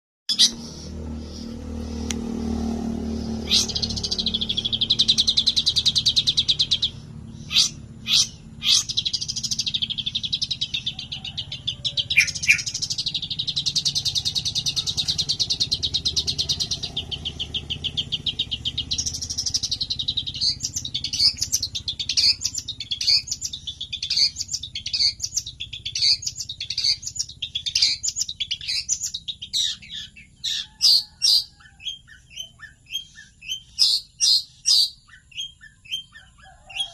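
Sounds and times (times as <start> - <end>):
high bird notes: 0.3 - 36.2
songbird fast trills: 0.3 - 36.9.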